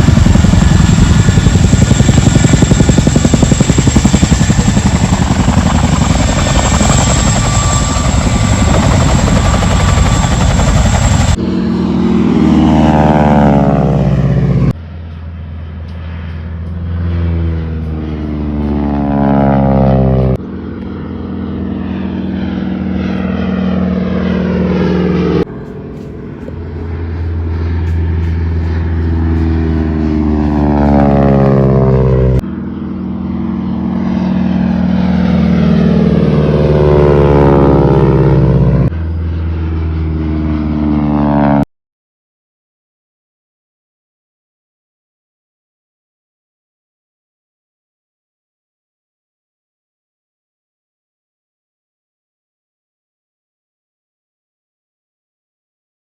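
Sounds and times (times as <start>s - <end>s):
helicopters flying low past: 0.0s - 41.6s.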